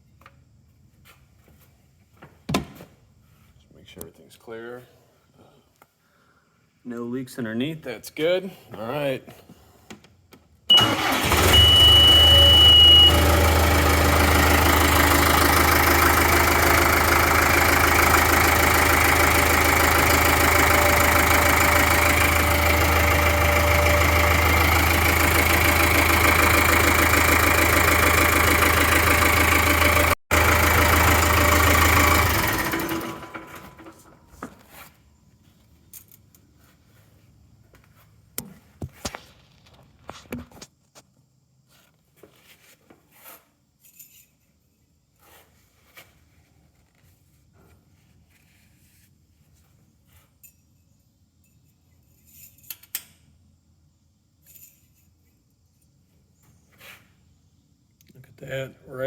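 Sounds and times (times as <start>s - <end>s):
short high beep: 10.7s - 13.4s
diesel engine idling: 10.7s - 34.0s
engine winding down: 10.7s - 34.2s.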